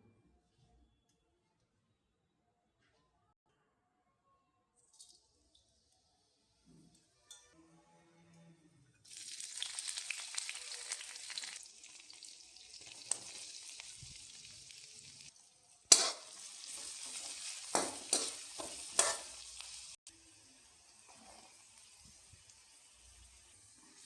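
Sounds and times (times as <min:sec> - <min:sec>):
food sizzling in hot oil: 0:09.1 - 0:24.0.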